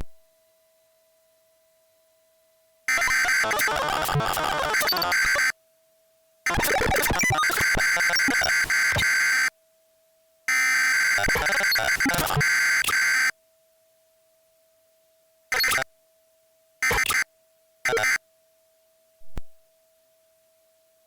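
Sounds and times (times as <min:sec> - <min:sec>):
data bursts with crackle: 0:02.9 - 0:05.6, 0:06.5 - 0:09.5, 0:10.5 - 0:13.3, 0:15.5 - 0:15.9, 0:16.8 - 0:17.3, 0:17.9 - 0:18.2.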